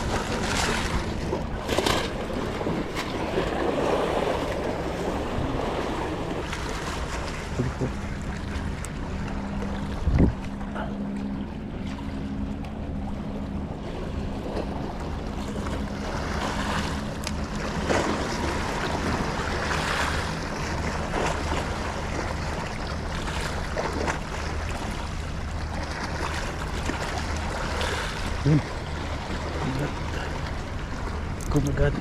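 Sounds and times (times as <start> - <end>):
sea water splashing at shore: 0.0 - 12.4, 13.8 - 32.0
boat engine hum: 0.0 - 32.0
wind on microphone: 9.8 - 10.9.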